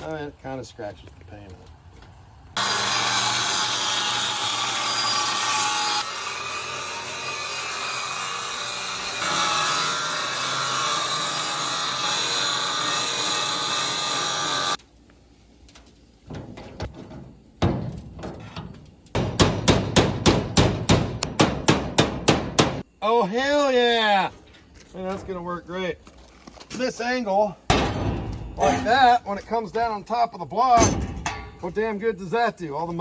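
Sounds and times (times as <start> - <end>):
angle grinder cutting steel: 2.6 - 14.8.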